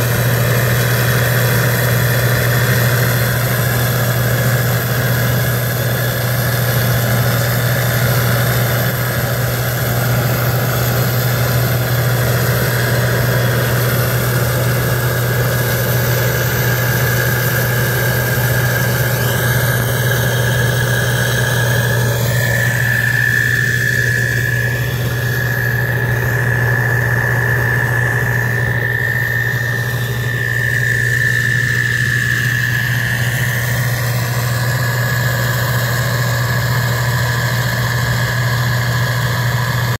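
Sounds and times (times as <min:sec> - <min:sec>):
continuous high whine: 0:00.0 - 0:39.9
farm machinery engine droning: 0:00.0 - 0:39.9.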